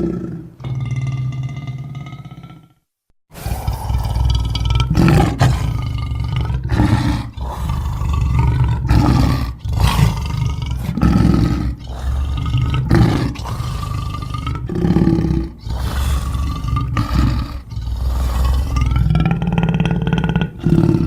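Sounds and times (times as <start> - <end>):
deep growling creature roars: 0.0 - 21.0.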